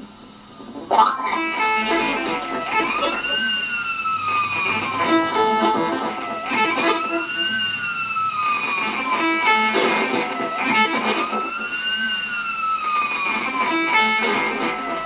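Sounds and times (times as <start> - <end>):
bursts of hiss: 0.1 - 15.0
siren-like synthesizer tone: 0.6 - 15.0
short stepped electronic blips: 1.0 - 7.7.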